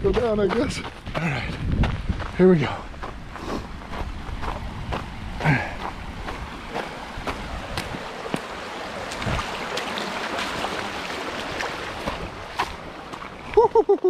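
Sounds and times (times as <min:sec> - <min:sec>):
rushing creek water: 0:02.5 - 0:14.0
feet splashing through water: 0:03.4 - 0:14.0.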